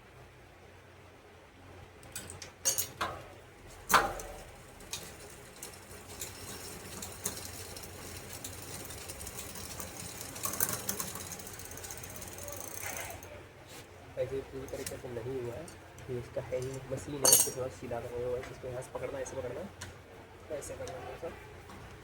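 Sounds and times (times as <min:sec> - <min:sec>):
metallic clicks and knocks: 0:02.0 - 0:12.9
bike chain rattling over cassette: 0:02.1 - 0:13.4.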